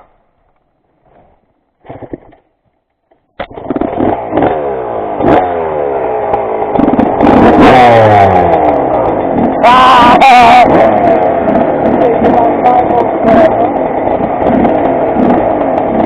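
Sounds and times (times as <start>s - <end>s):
motorcycle engine revving unevenly: 3.4s - 16.0s.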